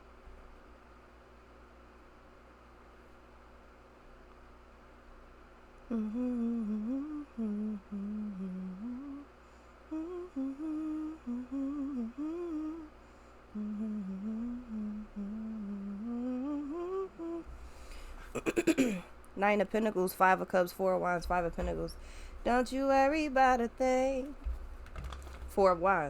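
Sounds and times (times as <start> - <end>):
woman humming: 5.9 - 9.3, 9.9 - 19.1, 21.1 - 24.5.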